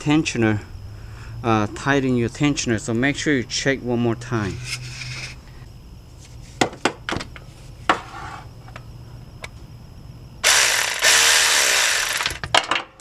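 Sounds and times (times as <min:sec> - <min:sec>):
ratchet wrench clicking: 0:10.4 - 0:12.5.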